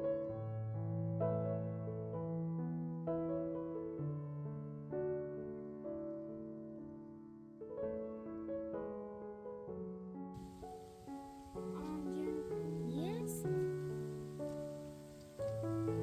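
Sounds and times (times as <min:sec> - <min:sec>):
gentle piano chords: 0:00.0 - 0:16.0.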